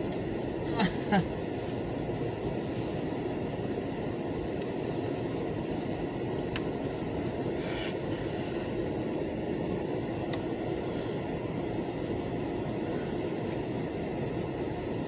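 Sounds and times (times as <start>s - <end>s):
faint click: 10.3s - 10.5s.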